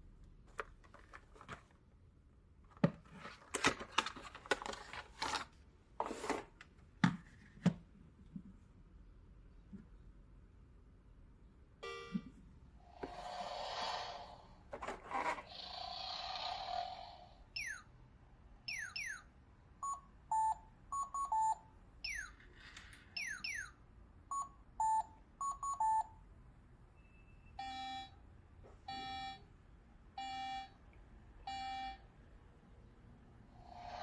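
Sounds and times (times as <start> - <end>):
short electronic beeps: 27.0 - 28.1.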